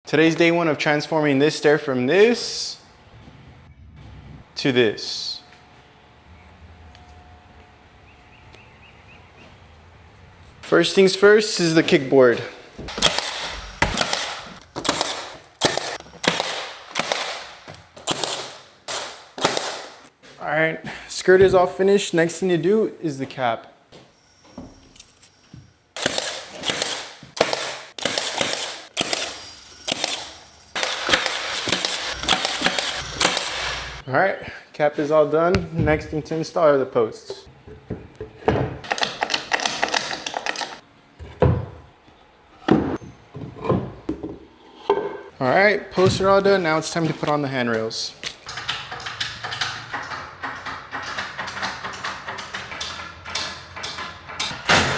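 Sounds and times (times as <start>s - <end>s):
pneumatic nailer firing: 12.8s - 20.1s, 26.0s - 34.0s, 48.4s - 54.9s.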